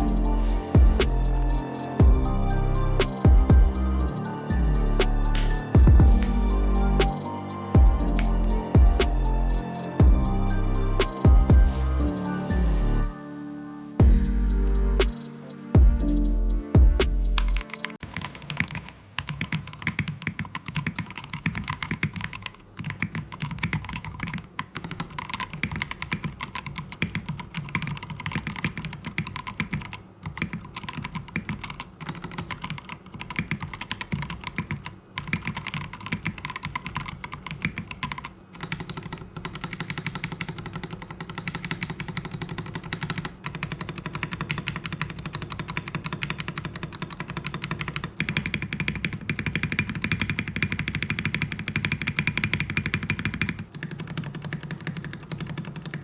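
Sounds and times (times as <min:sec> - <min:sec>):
fast mechanical keyboard typing: 0:00.0 - 0:02.0, 0:17.5 - 0:56.0.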